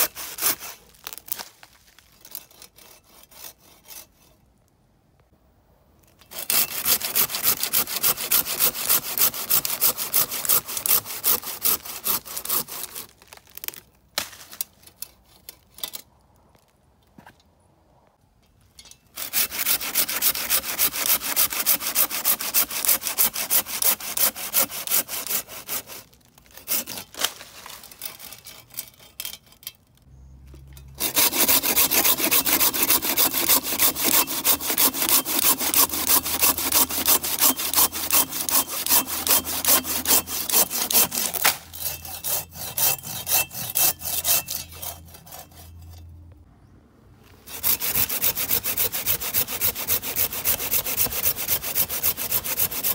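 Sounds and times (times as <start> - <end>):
hand saw cutting wood: 0.0 - 1.4, 2.2 - 4.4, 6.2 - 13.2, 19.1 - 29.6, 31.0 - 46.0, 47.4 - 52.9.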